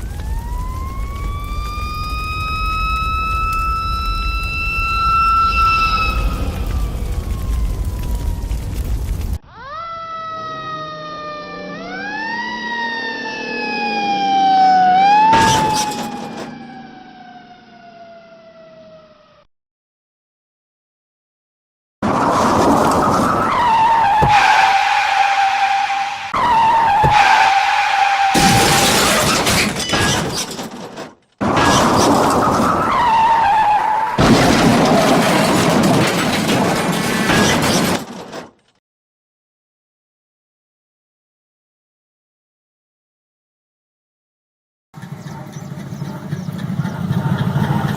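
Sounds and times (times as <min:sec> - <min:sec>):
emergency vehicle siren wailing: 0:00.0 - 0:19.5, 0:22.7 - 0:29.4, 0:31.8 - 0:35.9
crash smashing and breaking: 0:15.4 - 0:16.5, 0:22.0 - 0:25.1, 0:28.2 - 0:38.6
car tyres squealing: 0:22.8 - 0:30.6, 0:31.6 - 0:34.2.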